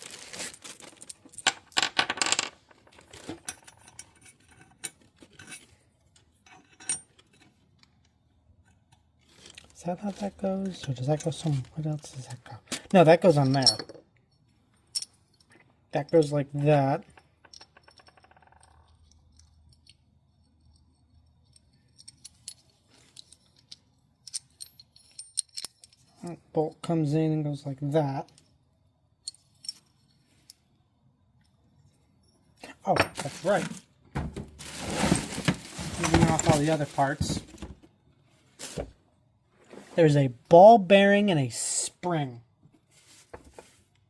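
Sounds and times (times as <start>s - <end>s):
metal engine parts clinking: 3.2s - 8.0s, 13.3s - 26.9s
metallic clinks of engine parts: 17.0s - 26.2s.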